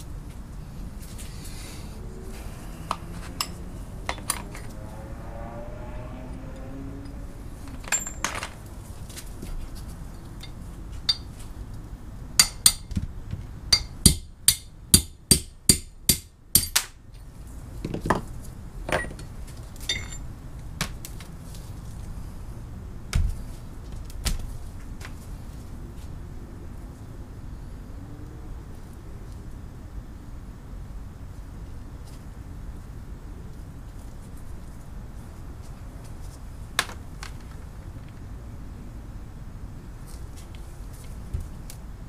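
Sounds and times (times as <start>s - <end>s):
hammer striking metal vise: 13.7s - 16.8s.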